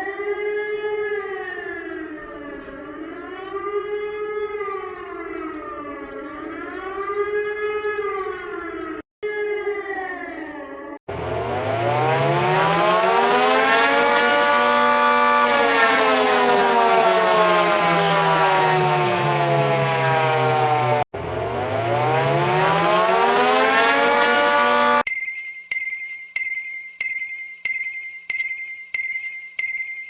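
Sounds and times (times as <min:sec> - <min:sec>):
siren wailing: 0:00.0 - 0:30.0
lower stepping tone: 0:25.1 - 0:30.0.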